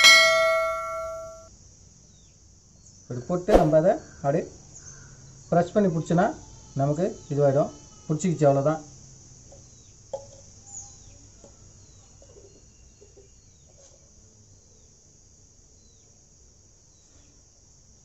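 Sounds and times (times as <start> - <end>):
faint bird chirps: 10.6 - 14.9.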